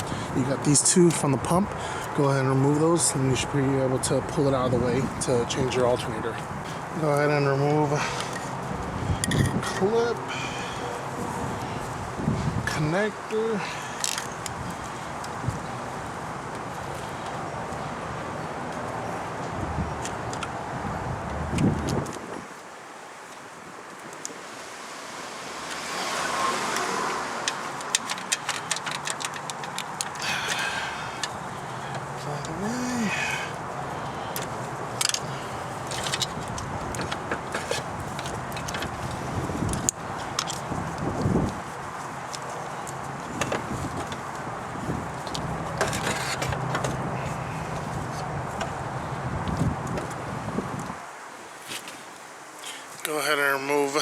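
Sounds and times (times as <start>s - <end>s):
rustling rushing noise: 4.4s - 53.0s
plastic and metal clicks: 27.5s - 30.2s.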